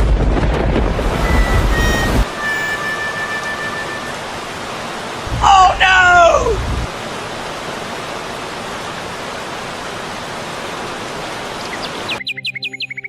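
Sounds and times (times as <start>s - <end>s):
steady rushing hiss: 2.2s - 11.6s
bird chirping: 11.6s - 13.0s.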